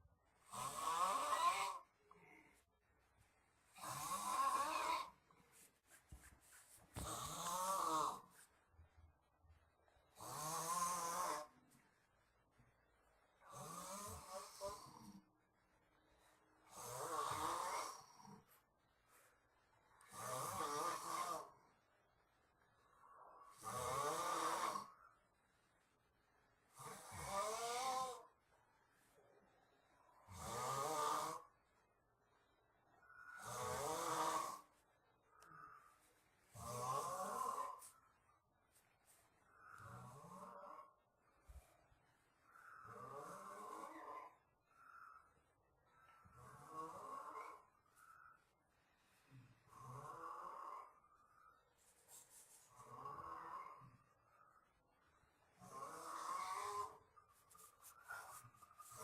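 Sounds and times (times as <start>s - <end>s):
quiet breathing: 0.0s - 59.0s
person snoring heavily: 0.4s - 2.6s, 3.7s - 5.3s, 7.0s - 8.5s, 10.1s - 11.6s, 13.4s - 15.3s, 16.6s - 18.6s, 20.0s - 21.6s, 22.9s - 25.1s, 26.7s - 28.3s, 30.2s - 31.6s, 33.0s - 38.1s, 39.4s - 41.0s, 42.4s - 45.3s, 45.9s - 48.3s, 49.6s - 51.1s, 52.7s - 54.2s, 55.5s - 59.0s.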